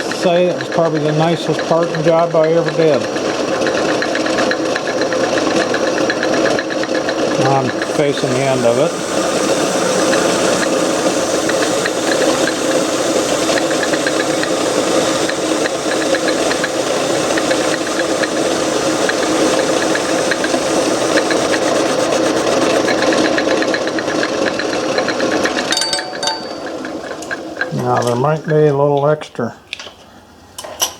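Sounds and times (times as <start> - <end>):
metal lathe running: 0.0 - 29.0
cutting tool cutting metal: 7.4 - 23.1.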